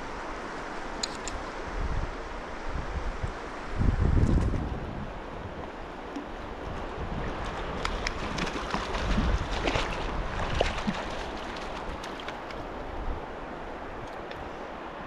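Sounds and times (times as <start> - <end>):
stream water rushing: 0.0 - 15.0
water splashing and slapping: 6.1 - 12.7.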